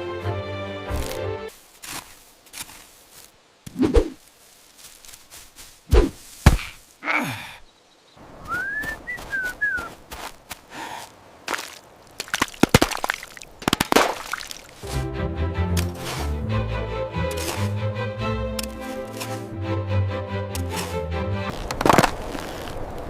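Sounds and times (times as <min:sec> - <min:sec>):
music: 0:00.0 - 0:01.5, 0:14.8 - 0:21.5
knocks and thuds: 0:05.9 - 0:06.8.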